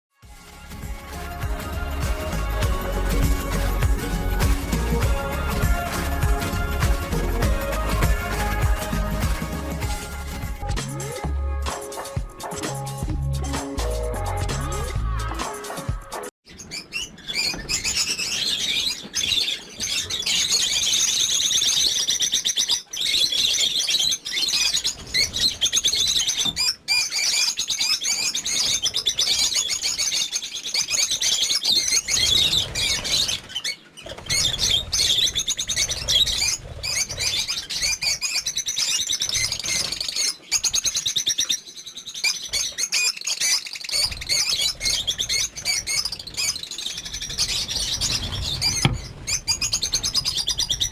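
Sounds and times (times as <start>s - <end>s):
lovebirds chirping: 16.5s - 50.9s.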